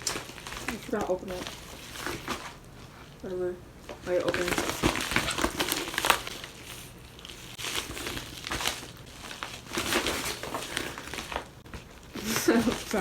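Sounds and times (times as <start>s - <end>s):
package crinkling: 0.0s - 13.0s.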